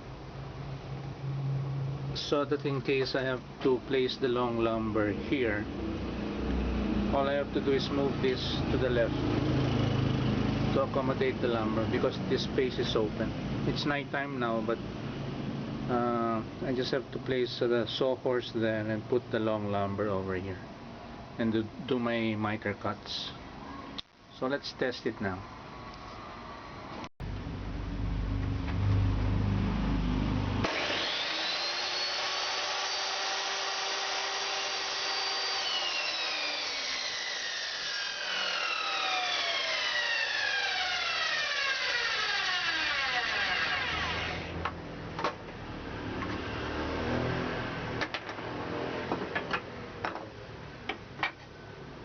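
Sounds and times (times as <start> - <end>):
miter saw whining: 30.6 - 44.7.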